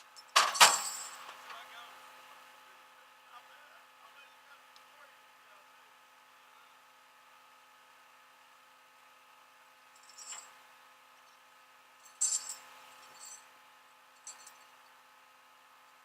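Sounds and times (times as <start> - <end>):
faint steady hum: 0.0 - 16.0
metallic clinks and rattles: 0.2 - 1.3, 9.9 - 10.6, 12.0 - 13.5, 14.2 - 14.9.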